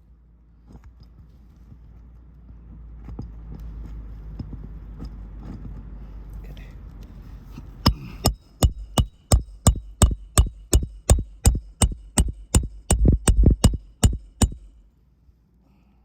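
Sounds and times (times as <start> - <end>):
hammer striking metal: 7.9 - 14.8.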